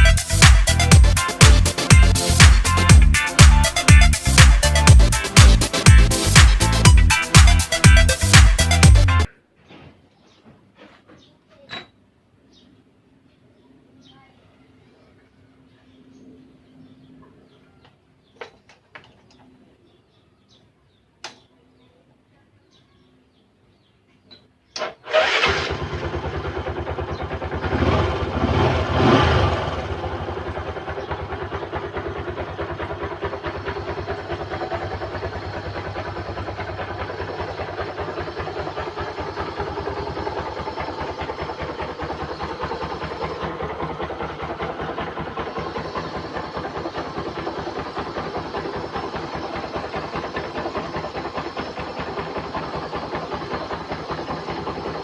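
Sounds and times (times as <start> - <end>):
motorcycle engine starting and idling: 0.0 - 9.3, 24.3 - 55.0.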